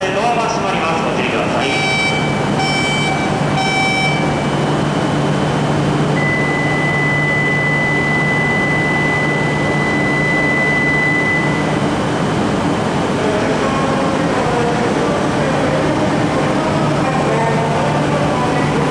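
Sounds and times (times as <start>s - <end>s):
train humming: 0.1s - 18.9s
high-pitched beep: 1.7s - 4.6s, 6.2s - 11.7s.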